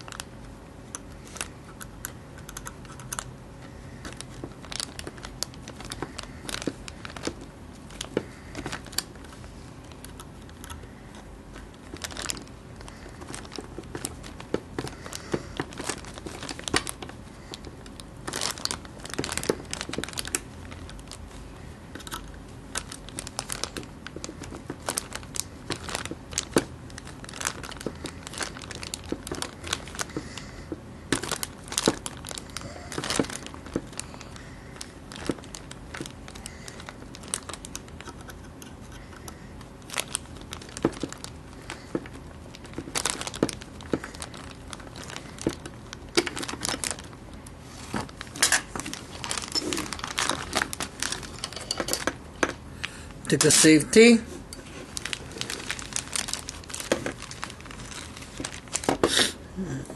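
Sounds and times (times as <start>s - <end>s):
small metal parts clicking: 51.4s - 52.2s.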